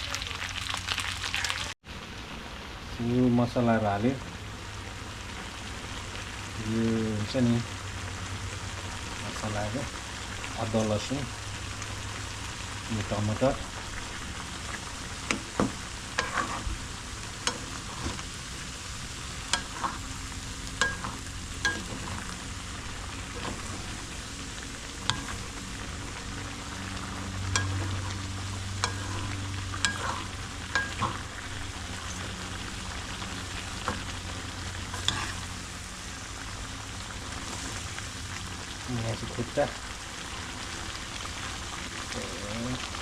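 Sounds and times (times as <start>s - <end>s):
chicken sizzling in hot oil: 0.0s - 43.0s
spatula knocking pan: 15.3s - 16.6s, 19.6s - 20.0s, 20.8s - 22.2s, 25.0s - 25.5s, 27.5s - 28.2s, 28.8s - 31.3s.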